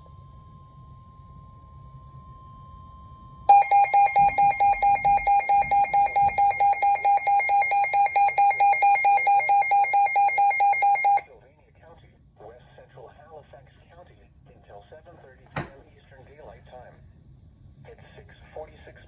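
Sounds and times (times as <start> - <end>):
rapid alert beeping: 3.5 - 11.2
weather radio warning tone: 3.5 - 11.2.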